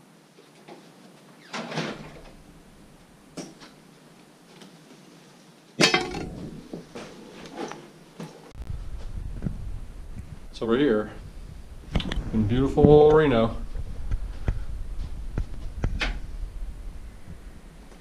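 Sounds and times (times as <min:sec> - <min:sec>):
knocks and clunks: 0:05.8 - 0:07.1.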